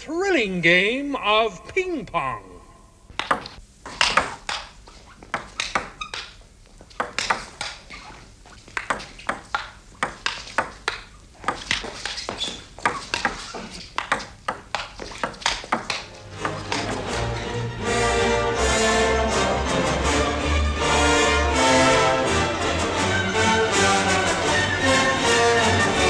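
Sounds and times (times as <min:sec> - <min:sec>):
table tennis ball hits: 0:03.1 - 0:06.4, 0:07.0 - 0:07.8, 0:08.7 - 0:17.1.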